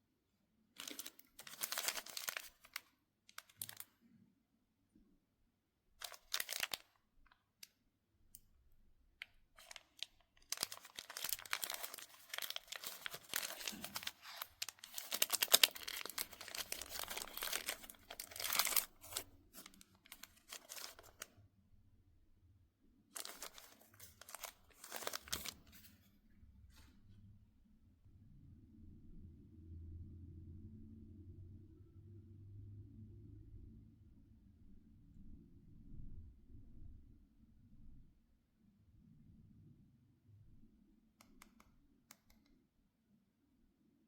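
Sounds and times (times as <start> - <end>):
plastic wrappers crinkling and tearing: 0.8 - 3.8, 6.0 - 6.9, 9.6 - 21.3, 23.2 - 25.9.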